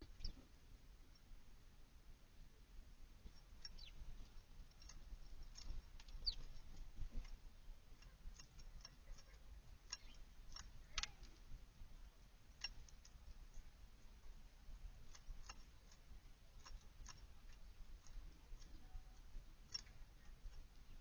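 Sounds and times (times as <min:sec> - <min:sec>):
songbird chip notes: 0:03.2 - 0:11.6.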